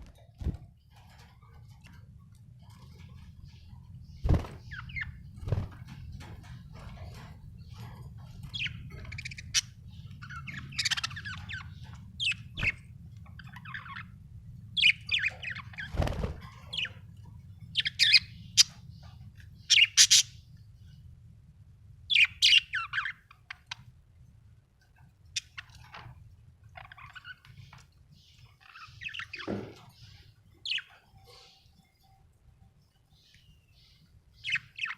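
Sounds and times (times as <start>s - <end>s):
budgerigar chirping and squawking: 8.4s - 14.1s, 17.7s - 18.8s, 19.6s - 20.4s, 22.1s - 23.8s.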